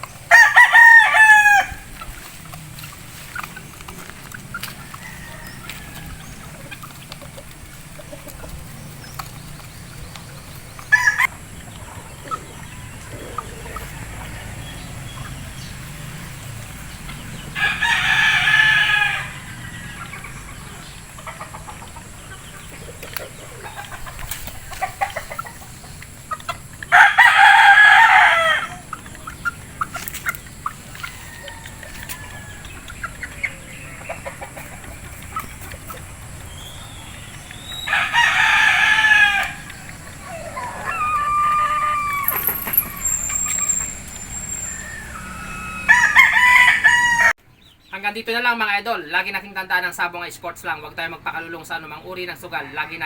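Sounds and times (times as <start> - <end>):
faint chicken sounds: 0.0 - 48.1
rooster crowing: 0.3 - 1.9, 4.6 - 6.6, 10.9 - 11.3, 12.1 - 15.7, 17.2 - 20.9, 26.8 - 29.0, 30.9 - 34.0, 36.6 - 47.4.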